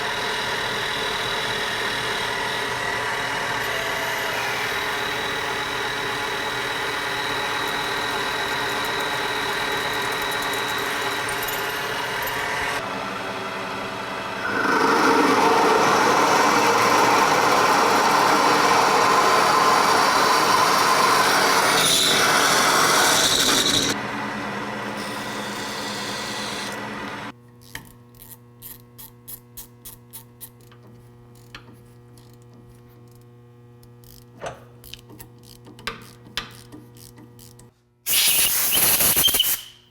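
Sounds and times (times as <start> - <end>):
loud noisy metal cut: 0.0 - 12.8, 14.4 - 24.0
metal-cutting machine motor hum: 0.0 - 27.3.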